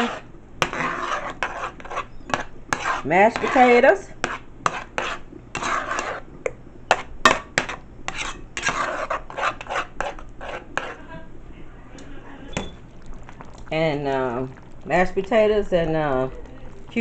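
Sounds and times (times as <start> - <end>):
spoon scraping a cooking pot: 0.0 - 6.3, 6.9 - 11.1.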